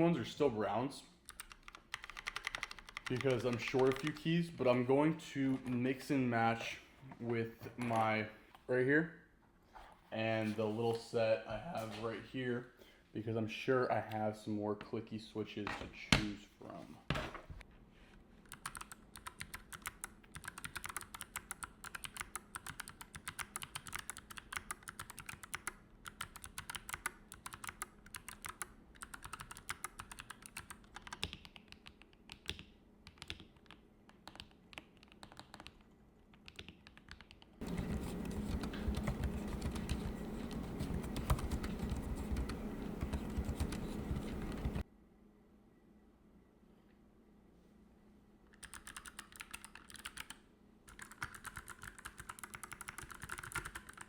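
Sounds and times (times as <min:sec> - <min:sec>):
mechanical keyboard typing: 0:01.3 - 0:04.3, 0:18.5 - 0:44.8, 0:48.6 - 0:54.0.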